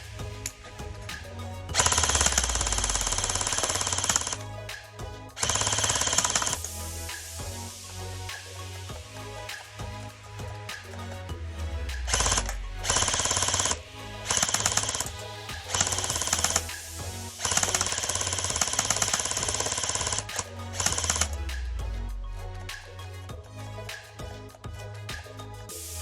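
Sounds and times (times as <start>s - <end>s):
background music: 0.0s - 26.0s
bb gun firing rapid bursts: 1.8s - 4.4s, 5.4s - 6.6s, 12.1s - 15.1s, 15.7s - 16.7s, 17.4s - 21.3s.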